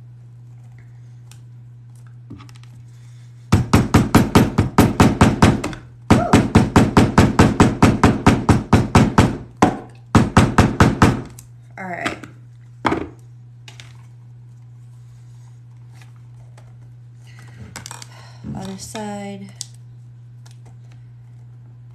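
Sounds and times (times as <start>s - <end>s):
hammering on leather: 3.5s - 11.3s.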